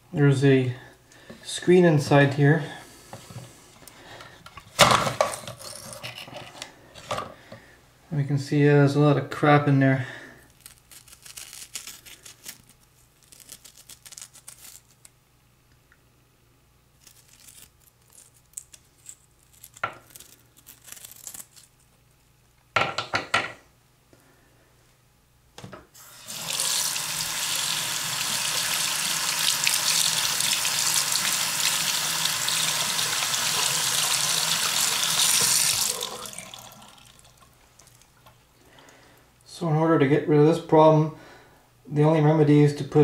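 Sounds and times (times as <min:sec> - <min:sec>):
parts clattering: 0:04.5 - 0:07.4
tap water running: 0:26.0 - 0:38.0.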